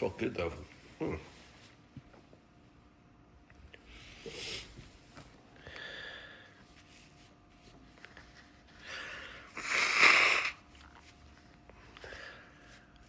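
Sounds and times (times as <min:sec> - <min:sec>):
man sniffing and snorting: 0:09.5 - 0:10.6.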